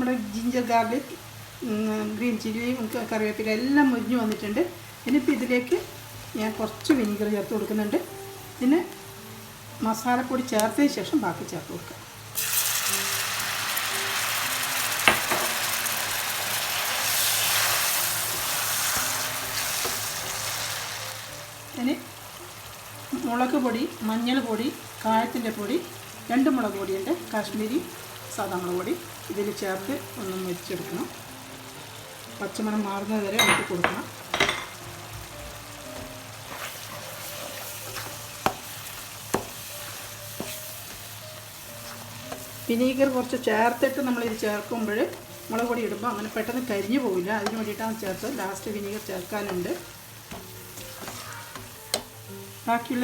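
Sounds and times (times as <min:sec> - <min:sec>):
vinegar sizzling in hot oil: 0:00.0 - 0:53.0
spoon clinking against pan: 0:33.4 - 0:34.8.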